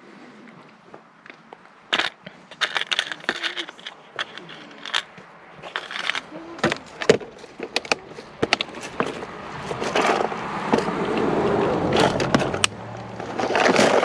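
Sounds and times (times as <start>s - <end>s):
small hard objects rattling: 1.9s - 10.9s, 11.9s - 14.0s.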